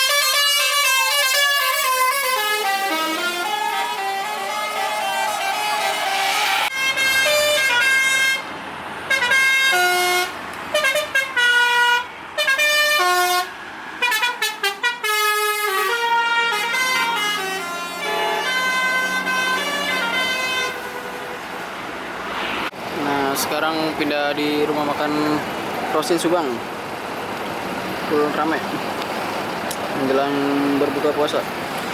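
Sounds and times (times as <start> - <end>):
multi-tone bus horn melody: 0.0 - 22.1.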